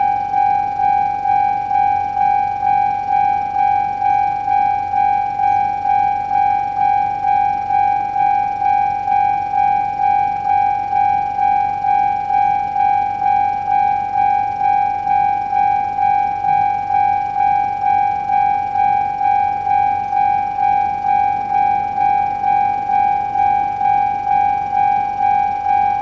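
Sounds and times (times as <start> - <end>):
level crossing warning bell: 0.0 - 26.0.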